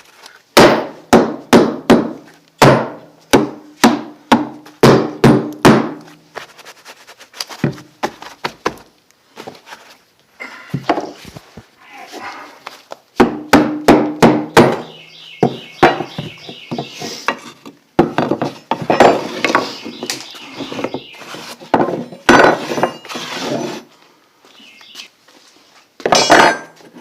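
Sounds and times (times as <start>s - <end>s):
hammer knocking on wood: 0.6s - 6.0s, 13.2s - 16.9s.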